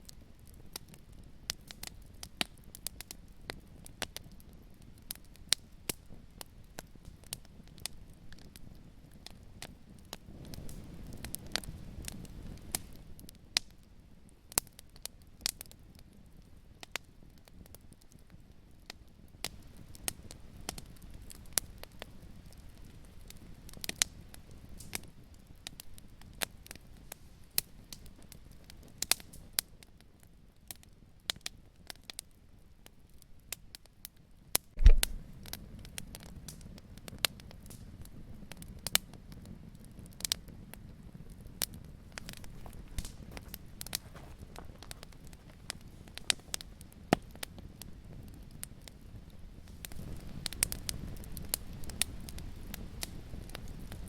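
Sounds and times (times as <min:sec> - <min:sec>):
wood fire crackling: 0:00.0 - 0:54.0
loud low thump: 0:34.8 - 0:35.2
low rumble: 0:34.8 - 0:35.3.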